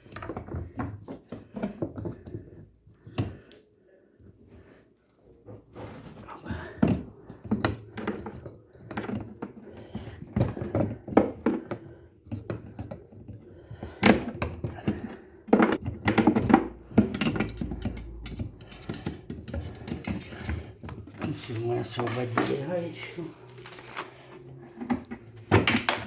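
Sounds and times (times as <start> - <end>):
wrench clinking on metal: 17.0 - 20.6.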